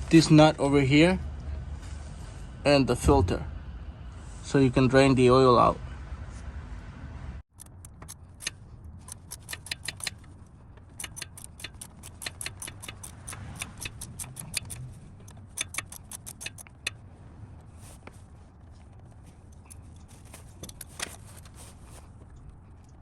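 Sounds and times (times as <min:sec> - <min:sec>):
socket ratchet clicking: 0:07.5 - 0:17.0, 0:19.6 - 0:21.5.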